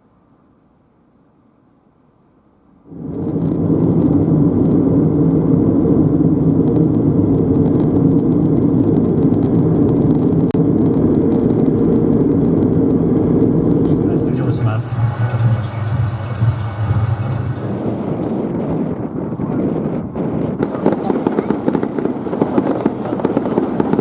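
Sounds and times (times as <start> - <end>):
loud mechanical rumble: 0.0 - 24.0.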